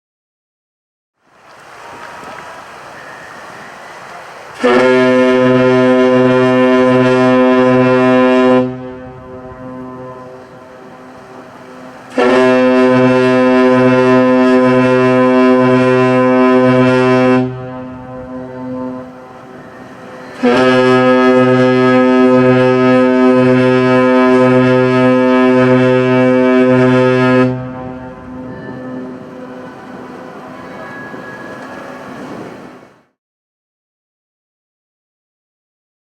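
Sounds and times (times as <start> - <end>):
ship's horn blasts: 2.8 - 33.1.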